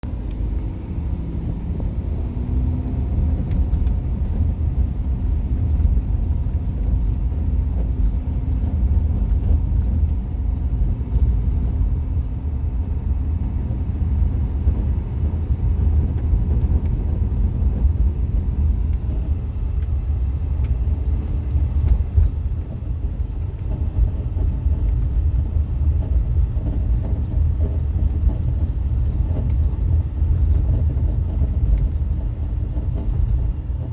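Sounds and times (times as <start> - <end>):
car cabin low rumble: 0.0 - 33.9.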